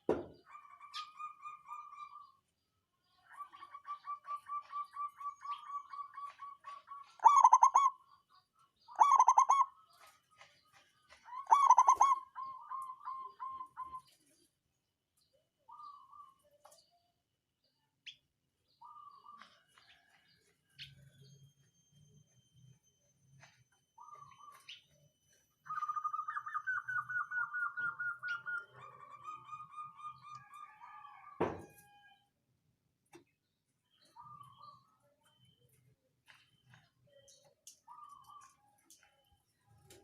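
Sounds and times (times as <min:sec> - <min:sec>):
dove cooing: 0:03.4 - 0:08.0, 0:08.9 - 0:09.7, 0:11.3 - 0:14.1, 0:25.7 - 0:31.2.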